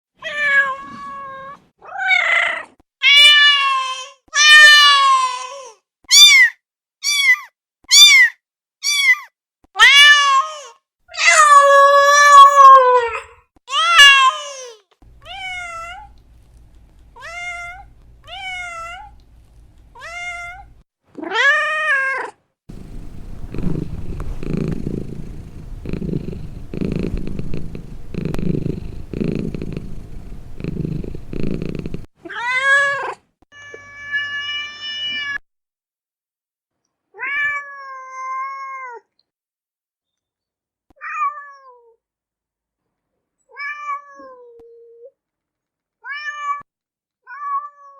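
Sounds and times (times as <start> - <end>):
cat purring: 22.7 - 32.1.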